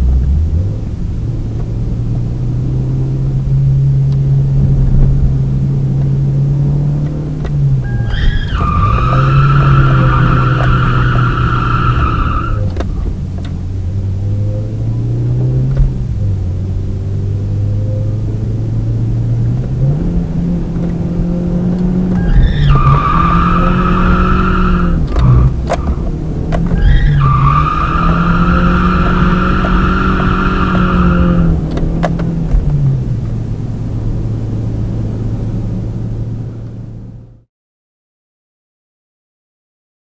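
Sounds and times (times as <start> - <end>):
car engine revving: 0.0 - 37.4
tyres squealing: 7.8 - 13.0, 22.2 - 26.0, 26.6 - 31.6.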